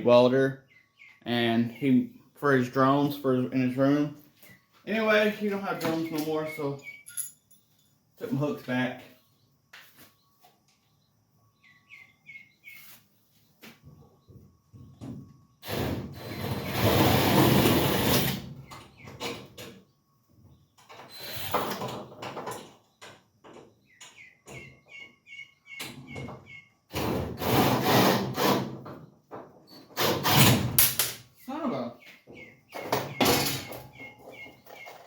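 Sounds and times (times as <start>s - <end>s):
bird chirping: 0.0s - 15.6s, 18.5s - 21.8s, 22.5s - 26.9s, 31.3s - 35.0s
tools clattering and scraping: 32.8s - 35.0s.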